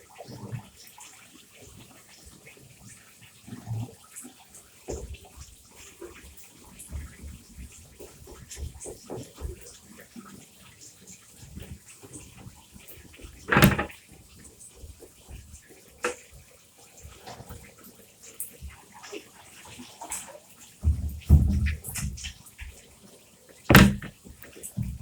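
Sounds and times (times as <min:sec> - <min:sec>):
plastic clatter: 0:13.5 - 0:13.9, 0:23.7 - 0:24.1
plastic parts knocking: 0:13.5 - 0:13.9, 0:23.7 - 0:24.1.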